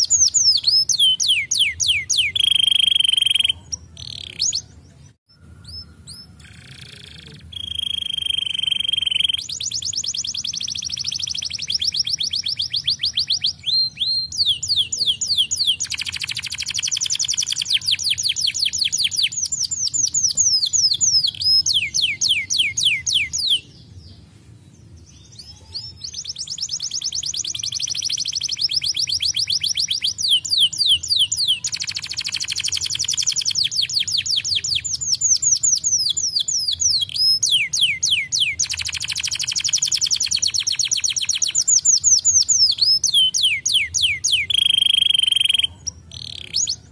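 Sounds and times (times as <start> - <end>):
canary trilling: 0.0 - 4.8, 5.6 - 23.7, 25.4 - 46.9
whistle-like bird note: 7.5 - 9.5.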